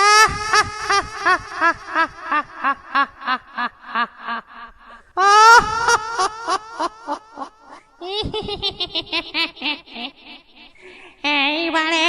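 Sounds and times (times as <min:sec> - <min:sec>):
ghostly cackling laugh: 0:00.0 - 0:11.2.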